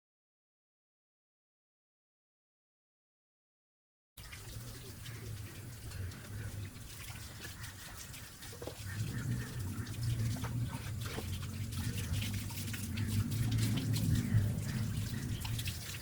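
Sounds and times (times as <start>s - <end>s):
water running and dripping: 4.2s - 16.0s.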